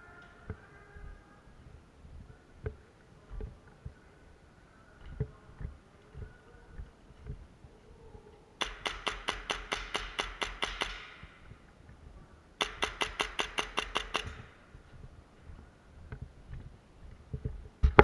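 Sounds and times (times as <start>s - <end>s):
airsoft gun rapid shots: 8.6s - 11.2s, 12.6s - 14.5s.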